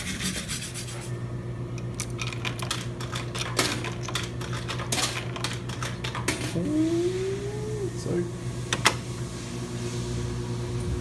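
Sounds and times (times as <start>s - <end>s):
steady low hum: 5.8s - 11.0s.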